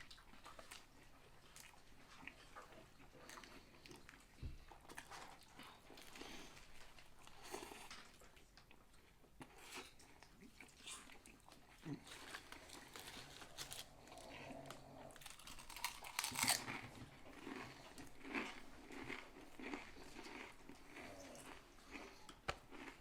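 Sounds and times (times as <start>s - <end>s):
person chewing crunchy food: 0.0s - 23.0s.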